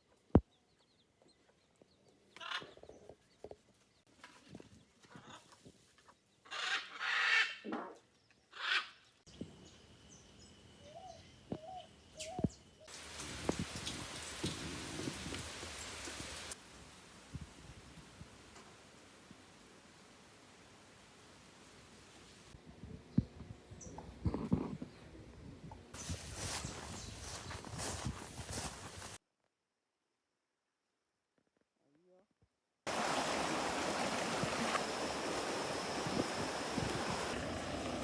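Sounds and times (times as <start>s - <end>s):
steady hiss: 12.9s - 22.6s, 32.9s - 38.0s
chickens calling: 26.0s - 29.1s.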